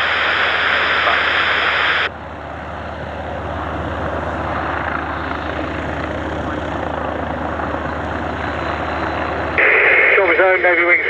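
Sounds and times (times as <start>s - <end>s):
radio static hiss: 0.0s - 2.1s, 9.6s - 11.0s
aircraft engine noise: 0.0s - 11.0s.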